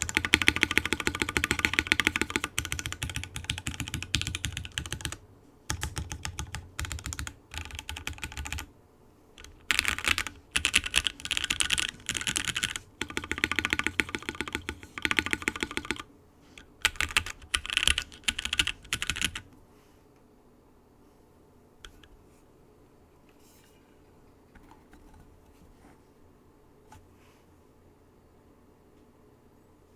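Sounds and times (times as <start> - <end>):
mechanical keyboard typing: 0.0 - 8.7, 9.4 - 19.5.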